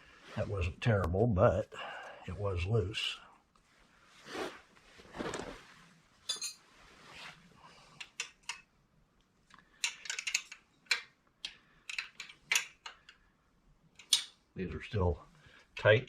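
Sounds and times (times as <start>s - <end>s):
metal tools clinking on bolts: 6.3s - 6.6s.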